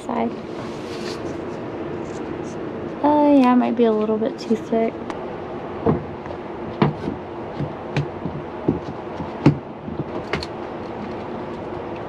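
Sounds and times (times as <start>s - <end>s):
steady low hum: 0.0s - 12.0s
acrylic panel knocking on frame: 6.8s - 10.4s.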